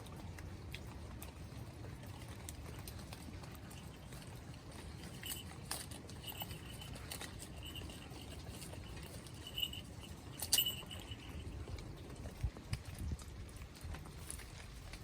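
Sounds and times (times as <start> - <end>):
sheep hooves clicking: 0.0 - 15.0
faint high ringing tone: 4.8 - 11.8.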